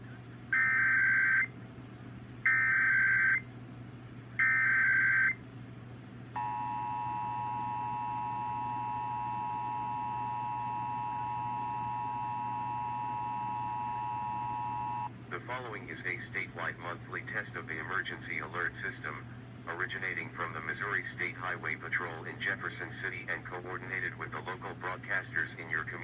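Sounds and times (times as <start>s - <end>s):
two-tone attention signal: 6.4s - 15.1s.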